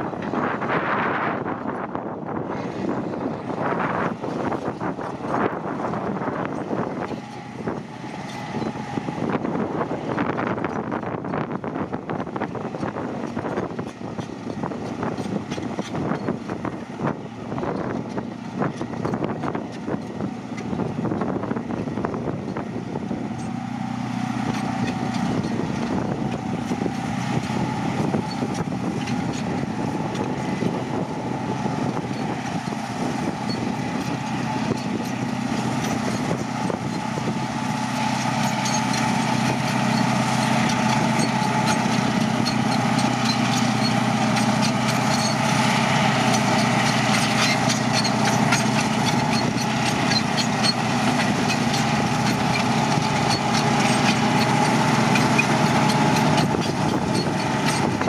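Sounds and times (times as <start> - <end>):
bulldozer diesel engine running: 0.0 - 58.0
dense metallic clatter: 22.4 - 58.0.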